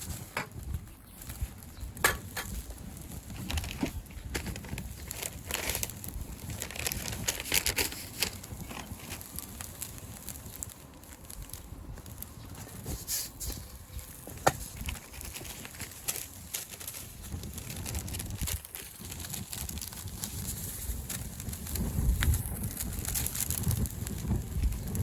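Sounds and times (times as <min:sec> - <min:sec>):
scraping in a wok: 0:12.6 - 0:16.1.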